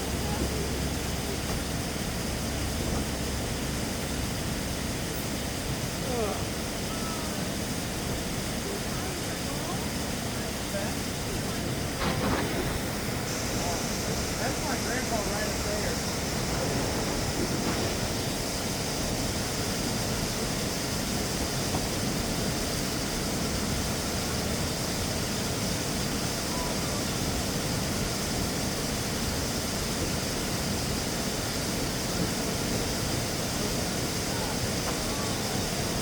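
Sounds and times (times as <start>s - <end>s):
steady rushing noise: 7.9s - 30.9s.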